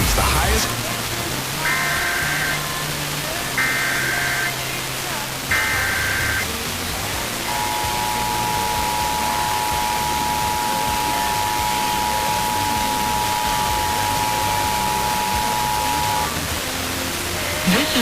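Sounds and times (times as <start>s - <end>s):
static hiss: 0.0s - 18.0s
two-tone alarm signal: 3.6s - 4.6s, 5.5s - 6.5s, 7.4s - 16.4s.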